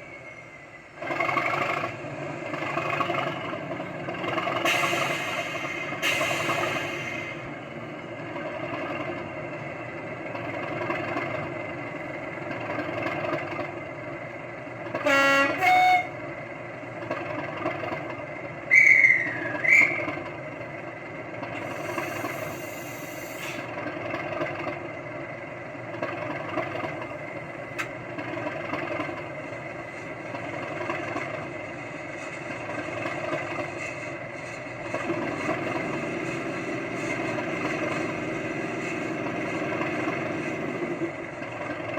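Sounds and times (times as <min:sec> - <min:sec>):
diesel engine running through speakers: 0:00.0 - 0:41.9
two-note horn blast: 0:15.0 - 0:16.2.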